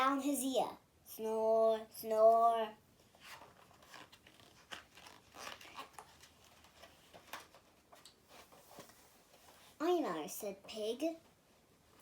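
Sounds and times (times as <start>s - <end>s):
paper pages turning: 3.2s - 9.6s.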